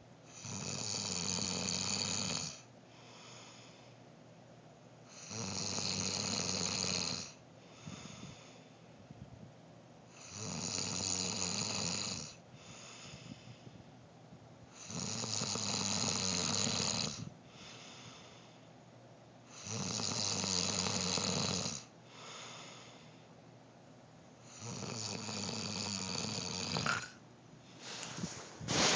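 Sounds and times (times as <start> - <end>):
quiet breaths: 0.0 - 23.6, 24.2 - 28.9
man snoring: 0.3 - 2.6, 5.1 - 7.4, 10.2 - 12.4, 14.8 - 17.3, 19.5 - 21.9, 24.4 - 27.1.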